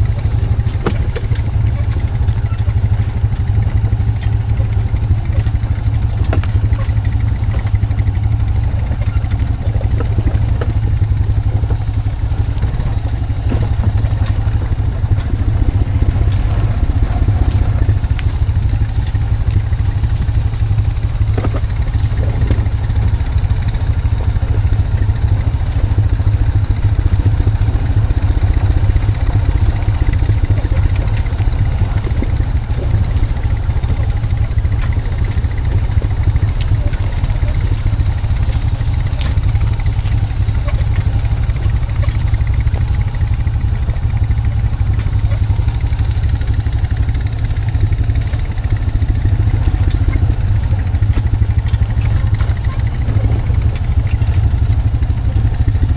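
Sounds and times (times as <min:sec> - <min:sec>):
clanks and rattles: 0:00.0 - 0:55.9
engine running at low revs: 0:00.0 - 0:55.9.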